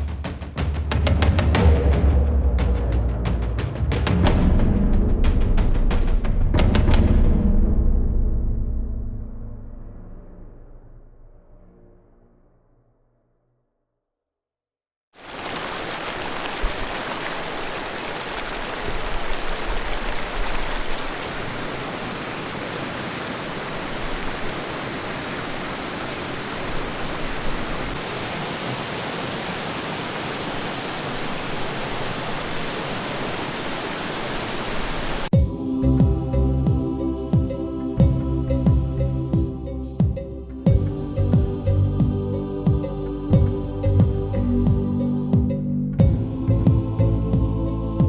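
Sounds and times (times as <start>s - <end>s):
waterfall rushing: 15.2s - 35.3s.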